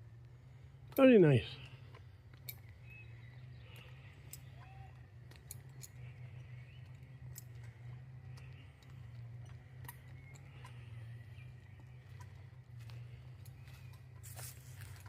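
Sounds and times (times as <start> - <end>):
low hum: 0.0 - 15.0
light clicks: 0.8 - 15.0.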